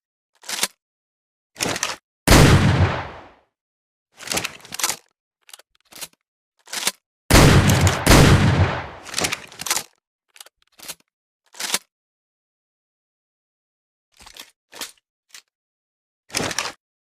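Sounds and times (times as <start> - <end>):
loud shotgun shots: 2.3 - 3.3, 7.3 - 9.2
shotgun action clicking: 7.3 - 9.8.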